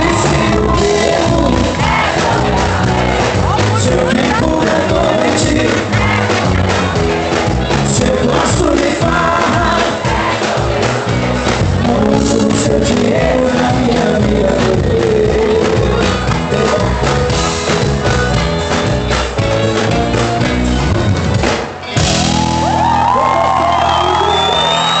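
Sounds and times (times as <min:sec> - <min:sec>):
crowd shouting and screaming: 0:00.0 - 0:13.6, 0:21.7 - 0:25.0
person singing: 0:00.0 - 0:17.3
drums: 0:00.0 - 0:25.0
live band playing: 0:00.0 - 0:25.0.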